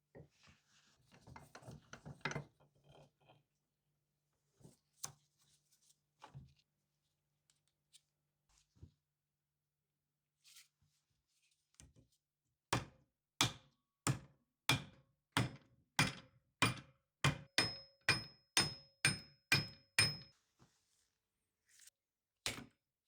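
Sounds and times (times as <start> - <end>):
hammer striking metal: 17.6 - 20.3.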